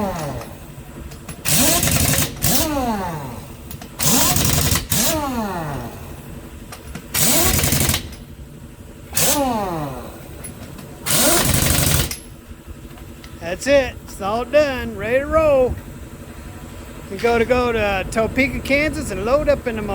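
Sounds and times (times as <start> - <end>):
pneumatic impact wrench hammering: 0.0 - 8.4, 9.1 - 13.4
air motor whine: 0.0 - 19.9.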